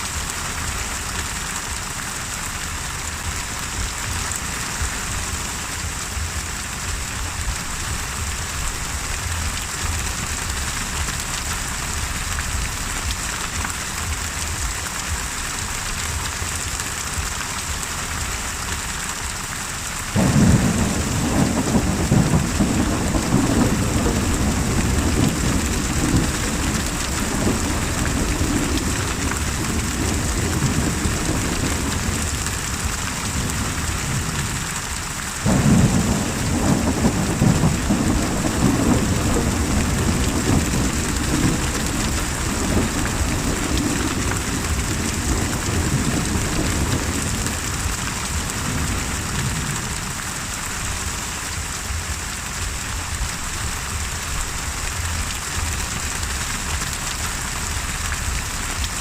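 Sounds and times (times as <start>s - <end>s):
rain hissing: 0.0s - 59.0s
loud thunderclap: 20.2s - 34.6s, 35.4s - 50.0s
rumbling thunder: 20.2s - 34.7s, 35.4s - 50.2s.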